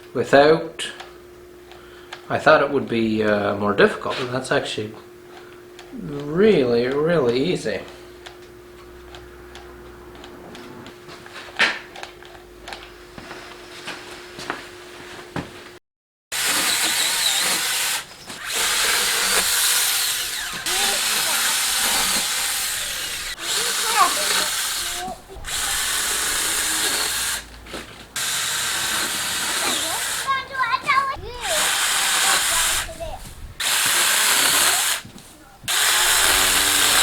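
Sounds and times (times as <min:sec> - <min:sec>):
faint steady hum: 0:00.0 - 0:15.3
mini chainsaw running in bursts: 0:16.3 - 0:37.0
loud scrape: 0:16.4 - 0:35.1.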